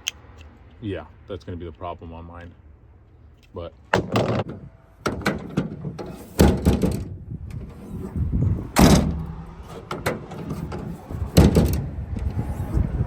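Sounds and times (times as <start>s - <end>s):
metallic tailgate clunks: 3.9s - 12.9s.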